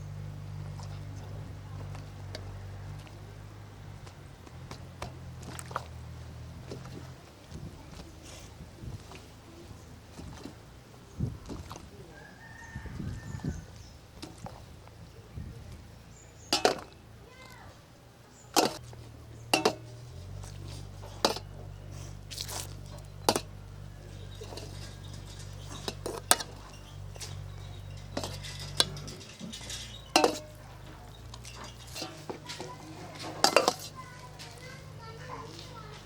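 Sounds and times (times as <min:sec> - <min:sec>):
kitchenware clinking: 0:16.5 - 0:17.0, 0:19.4 - 0:20.3, 0:22.8 - 0:35.0.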